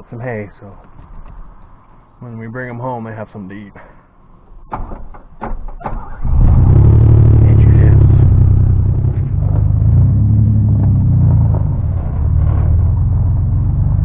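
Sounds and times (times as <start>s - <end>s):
engine droning: 0.0s - 14.0s
knocks: 4.7s - 6.0s.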